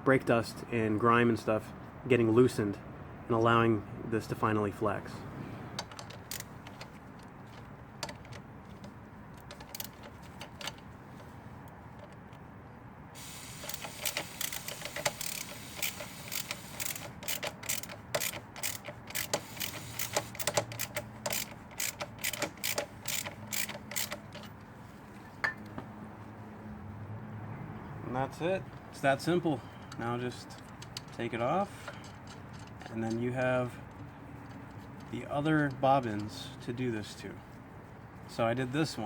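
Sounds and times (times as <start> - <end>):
ratchet clicking: 5.8 - 7.0, 9.4 - 10.8, 13.4 - 24.5
aerosol can hissing: 13.2 - 14.4.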